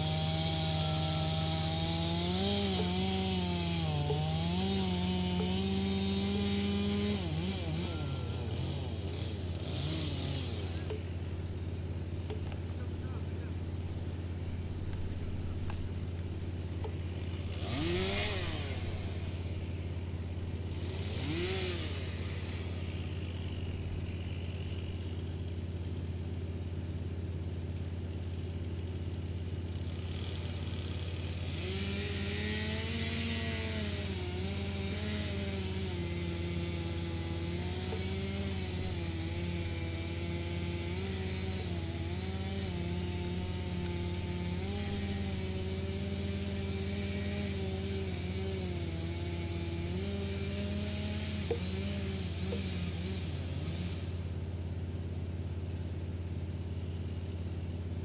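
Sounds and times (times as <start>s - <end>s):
wood shredding: 0.0s - 26.9s, 28.0s - 54.4s
wood chipper engine running: 0.0s - 58.0s.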